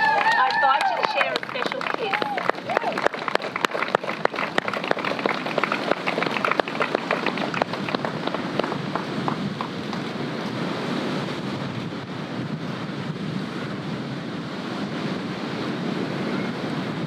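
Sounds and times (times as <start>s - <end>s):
crowd applauding: 0.0s - 10.4s.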